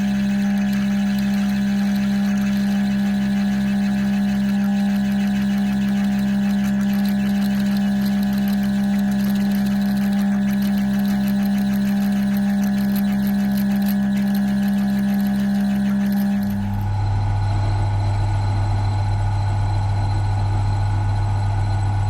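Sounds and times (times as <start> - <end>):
electric motor humming: 0.0 - 17.0.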